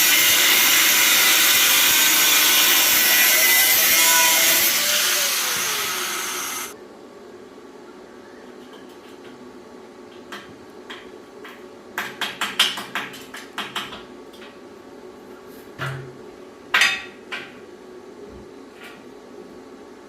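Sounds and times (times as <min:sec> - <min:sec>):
sharp knocks and clatters: 0:10.1 - 0:14.6.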